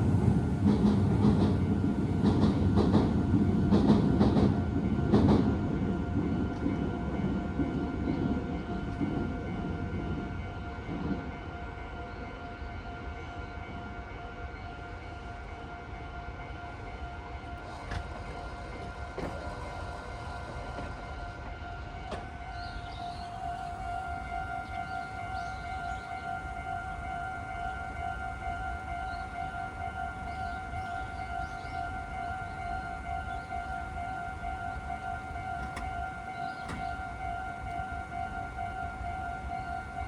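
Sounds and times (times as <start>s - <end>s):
train wheels clicking over rail joints: 0.2s - 9.3s, 17.6s - 23.2s, 35.4s - 37.8s
level crossing alarm ringing: 19.9s - 40.0s.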